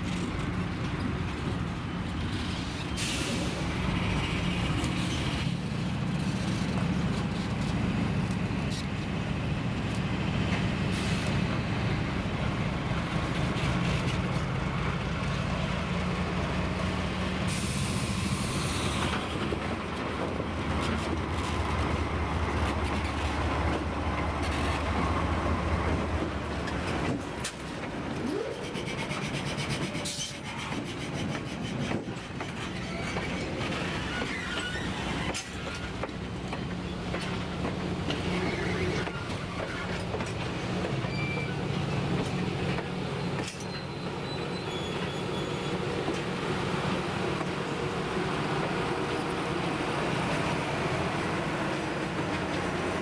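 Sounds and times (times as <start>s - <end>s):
locomotive engine hum: 0.0s - 53.0s
air brakes hissing: 2.7s - 3.7s, 10.9s - 11.4s, 17.4s - 19.4s.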